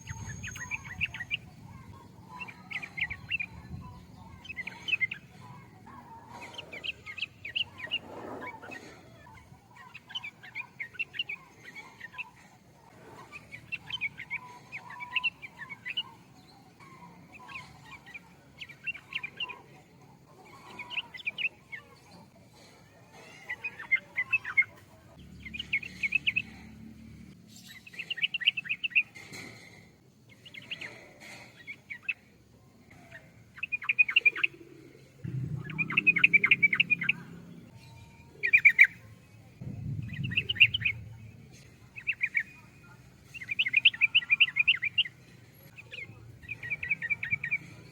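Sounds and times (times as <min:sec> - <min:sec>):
faint low hum: 0:35.0 - 0:47.9
bulbul singing bubbly chirps: 0:35.2 - 0:37.7, 0:39.6 - 0:42.7.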